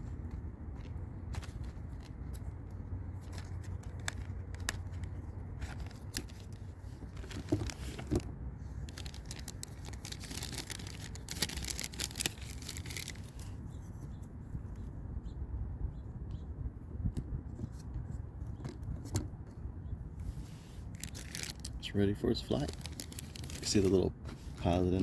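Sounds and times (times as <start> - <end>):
packaging rustling: 3.2 - 13.6, 20.9 - 21.8, 22.5 - 24.8
plastic handling clicks: 3.3 - 8.3.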